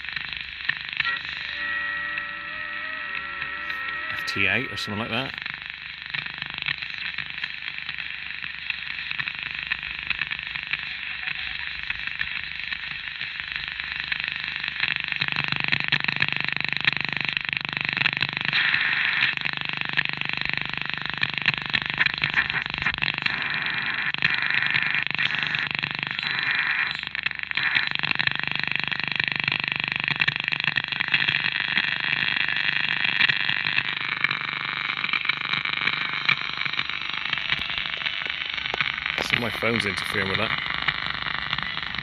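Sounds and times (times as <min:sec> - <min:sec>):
radio static: 0:00.0 - 0:42.0
garbled radio signal warbling: 0:00.9 - 0:05.5, 0:23.3 - 0:27.8, 0:34.4 - 0:42.0.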